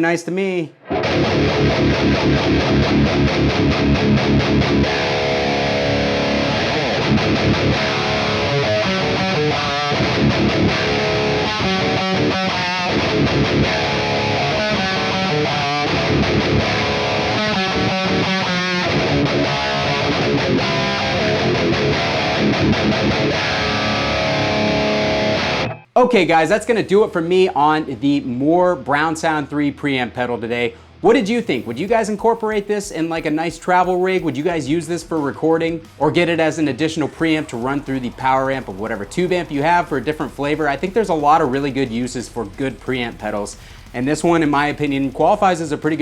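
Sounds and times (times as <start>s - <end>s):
distorted electric guitar metal riffs: 0.8s - 26.8s, 35.8s - 46.0s.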